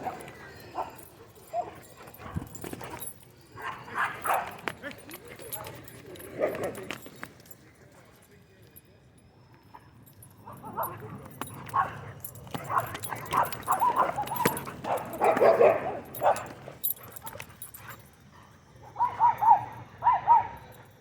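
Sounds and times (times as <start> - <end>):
dog barking and yipping: 0.0 - 4.7, 10.5 - 18.0, 18.9 - 20.6.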